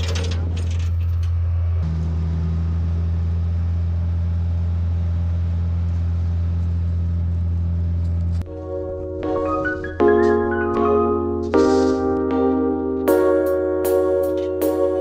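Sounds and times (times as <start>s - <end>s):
engine running steadily: 0.0s - 8.5s
mallet percussion music: 8.5s - 15.0s.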